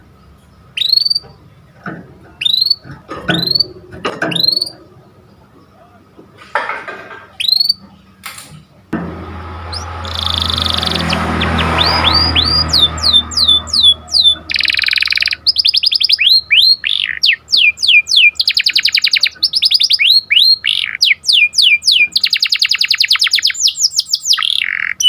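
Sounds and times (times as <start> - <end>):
canary chirping and trilling: 0.8 - 1.3, 2.4 - 4.9, 7.4 - 8.0, 9.7 - 25.0
low hum: 8.9 - 16.6.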